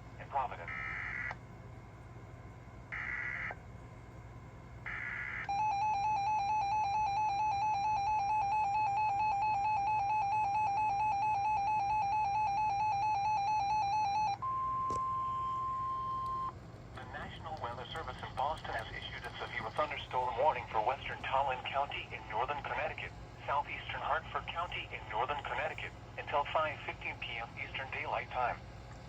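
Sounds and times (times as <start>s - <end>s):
steady warning alarm tone: 0.6s - 1.4s, 3.0s - 3.6s, 4.9s - 16.5s.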